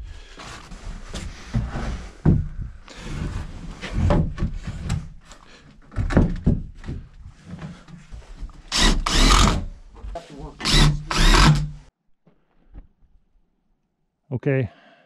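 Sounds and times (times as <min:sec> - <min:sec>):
wooden lumber knocking: 0:05.8 - 0:07.9
power drill running: 0:08.7 - 0:09.7, 0:10.6 - 0:11.8.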